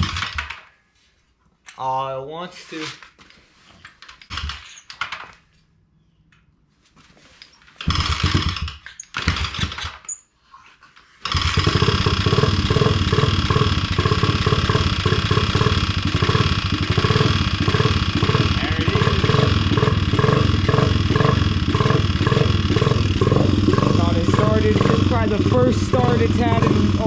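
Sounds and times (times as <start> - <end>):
motorbike engine kick-started: 0.0 - 0.6, 7.8 - 10.1, 11.2 - 27.0.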